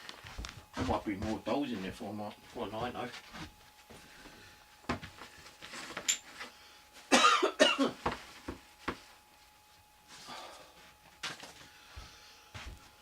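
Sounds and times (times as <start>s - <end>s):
knocks and rustles of handling: 4.8s - 6.5s, 7.9s - 9.6s
man coughing: 7.1s - 8.0s.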